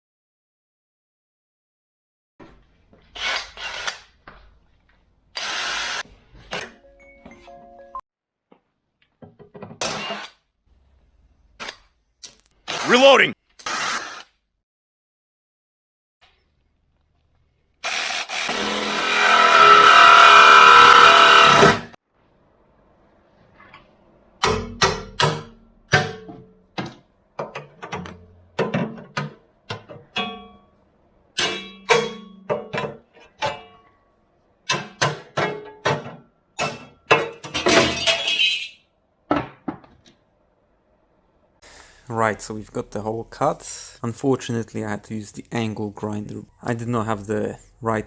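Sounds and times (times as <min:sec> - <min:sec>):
angle grinder cutting metal: 0:17.9 - 0:22.0.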